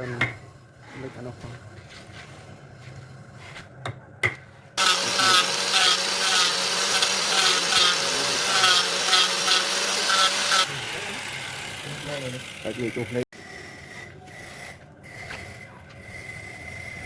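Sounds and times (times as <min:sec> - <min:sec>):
wood lathe humming: 0:04.8 - 0:13.9
tool scraping spinning wood: 0:04.8 - 0:17.0.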